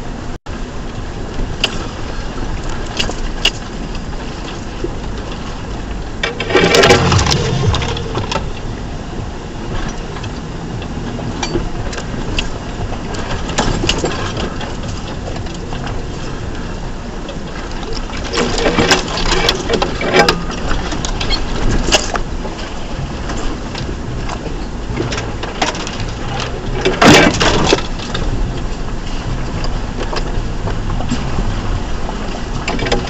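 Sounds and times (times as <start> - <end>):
truck engine rumbling: 0.0 - 33.0
truck knocking over rocks: 6.2 - 8.7, 11.3 - 33.0.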